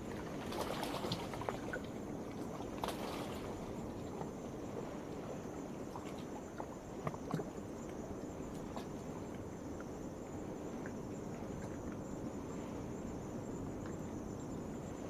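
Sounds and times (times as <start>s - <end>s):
night insects chirring: 0.0s - 15.0s.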